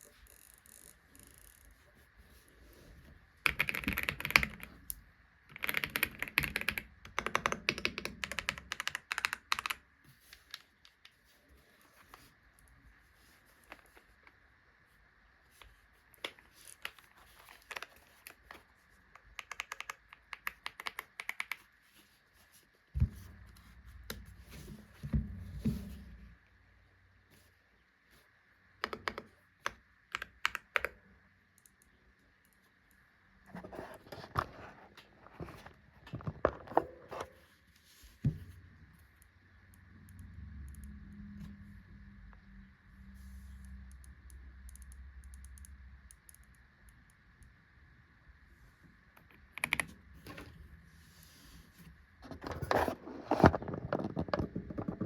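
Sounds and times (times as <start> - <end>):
mechanical keyboard typing: 3.4 - 4.8, 5.5 - 9.9, 19.2 - 21.7, 30.1 - 31.0, 49.5 - 50.0
faint low hum: 21.8 - 55.0.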